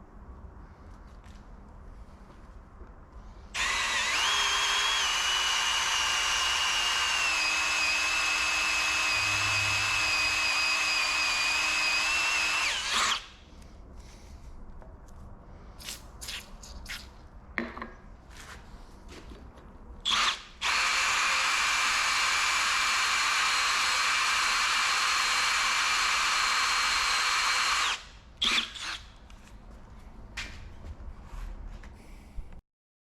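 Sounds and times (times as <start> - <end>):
electric drill drilling metal: 3.6 - 13.4, 20.1 - 29.1.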